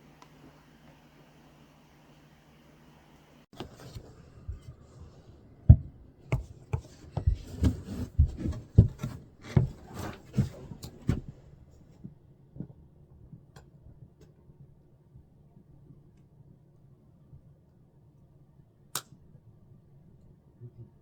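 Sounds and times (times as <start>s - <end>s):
wooden objects knocking and rubbing: 3.6s - 11.4s.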